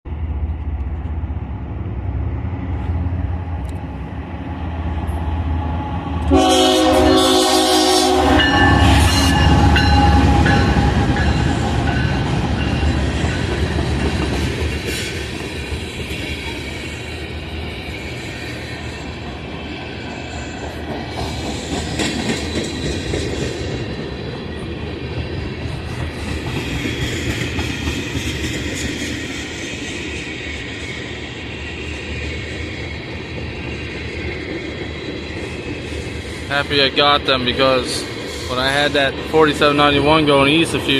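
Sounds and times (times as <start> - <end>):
train rumbling and clattering: 0.1 - 40.9
locomotive air horn: 6.3 - 10.2.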